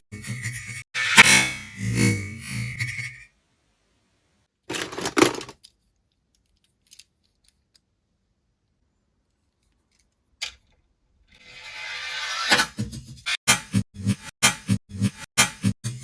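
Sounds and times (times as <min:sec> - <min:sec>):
clatter of small hard objects: 0:04.7 - 0:07.9.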